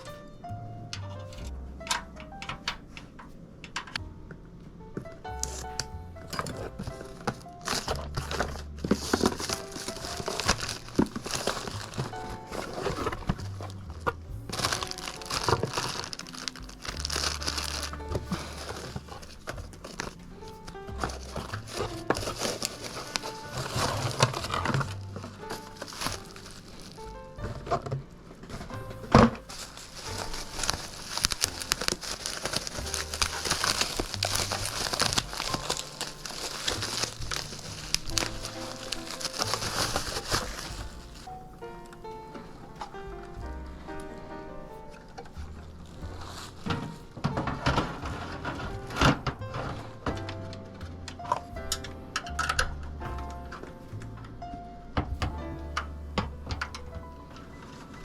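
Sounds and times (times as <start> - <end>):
background music with bass notes: 0.0 - 3.0, 3.9 - 58.0
plastic packaging crinkling: 5.4 - 43.0, 44.9 - 50.1.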